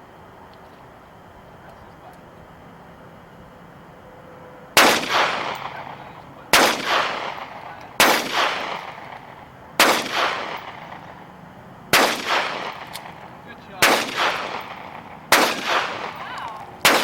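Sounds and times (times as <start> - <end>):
pistol shots echoing: 4.8 - 17.0.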